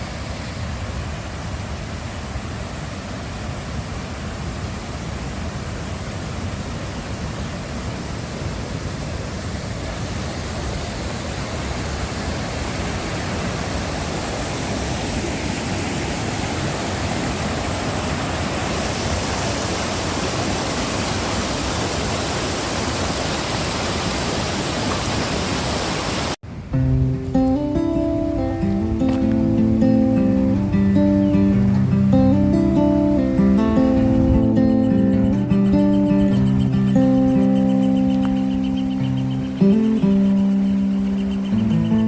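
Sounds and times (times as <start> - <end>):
river rushing: 0.0 - 42.0
acoustic guitar music: 26.7 - 42.0.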